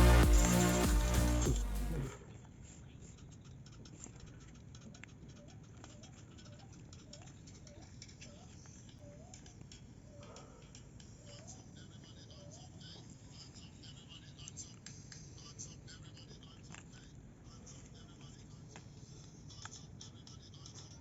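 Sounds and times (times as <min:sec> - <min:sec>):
electronic music: 0:00.0 - 0:02.2.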